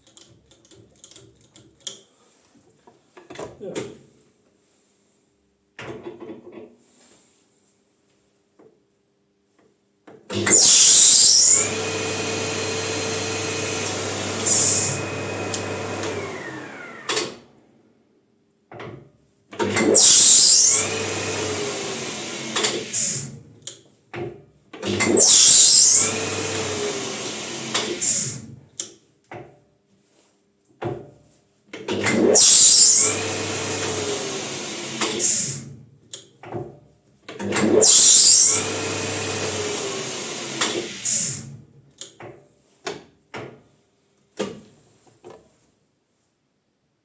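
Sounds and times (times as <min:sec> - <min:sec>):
metal lathe running and spinning down: 0:10.5 - 0:17.4, 0:19.8 - 0:23.2, 0:24.9 - 0:28.3, 0:32.1 - 0:35.4, 0:37.6 - 0:41.4
loud hiss on lathe start-up: 0:10.5 - 0:17.5, 0:19.8 - 0:23.4, 0:25.0 - 0:28.4, 0:32.2 - 0:35.6, 0:37.7 - 0:41.5.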